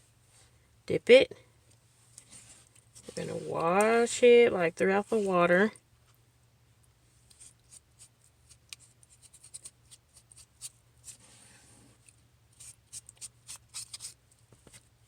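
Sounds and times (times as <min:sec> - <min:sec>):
eraser scrubbing mesh: 0:12.6 - 0:14.2.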